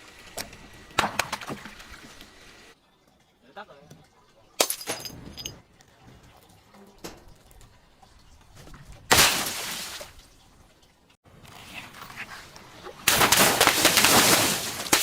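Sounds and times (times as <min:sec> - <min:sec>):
glass bottles breaking: 0:04.6 - 0:05.6, 0:09.1 - 0:10.0, 0:13.1 - 0:15.0
glass shards tinkling: 0:04.6 - 0:05.6
small glass clinks: 0:04.6 - 0:05.6.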